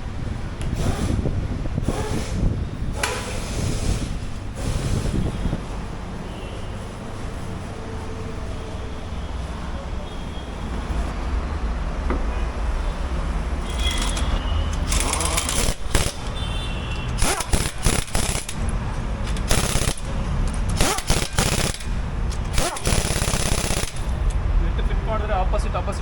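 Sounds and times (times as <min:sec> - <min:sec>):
pneumatic impact wrench rattling: 0:00.6 - 0:05.2, 0:13.6 - 0:24.4.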